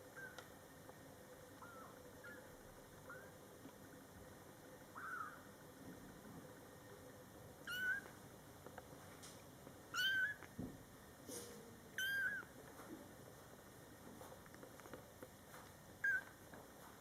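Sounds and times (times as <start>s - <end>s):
kitten meowing: 7.7s - 8.1s, 9.9s - 10.5s, 12.0s - 12.5s, 16.0s - 16.3s.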